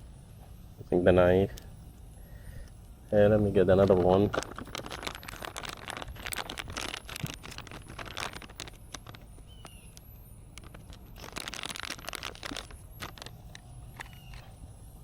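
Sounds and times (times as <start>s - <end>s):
scraping and handling noise: 3.4s - 14.7s
wood fire crackling and popping: 3.8s - 14.2s.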